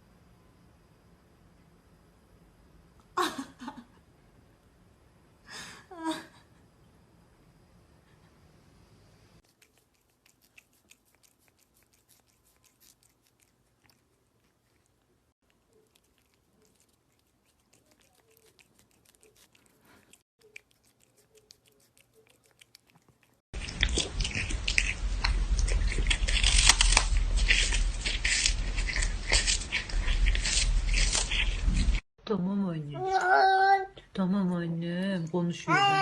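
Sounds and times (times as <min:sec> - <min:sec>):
pet chewing and crunching food: 0:09.4 - 0:32.0.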